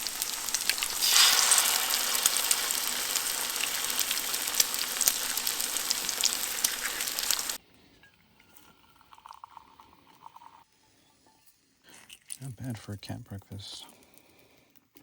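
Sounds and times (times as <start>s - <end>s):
food sizzling in a pan: 0.0s - 7.6s.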